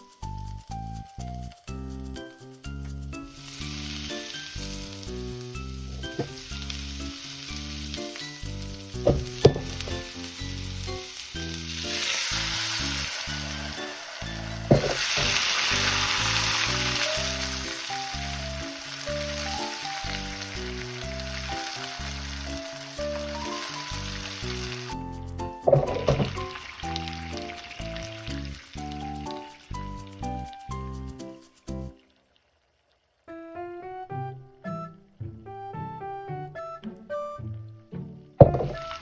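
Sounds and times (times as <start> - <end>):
background music with plucked notes: 0.0 - 32.0, 33.3 - 39.0
greens sizzling in a pan: 0.0 - 33.8
sharp knocks: 6.1 - 6.4, 9.0 - 10.1, 14.7 - 15.4, 25.6 - 26.5, 38.0 - 39.0.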